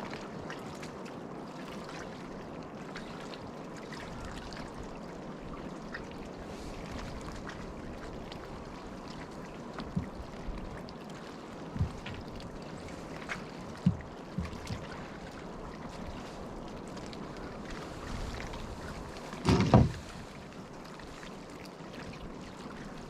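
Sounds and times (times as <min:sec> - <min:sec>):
water trickling: 0:00.0 - 0:23.0
dull low knocks: 0:11.8 - 0:12.4, 0:13.8 - 0:14.9, 0:19.4 - 0:20.2.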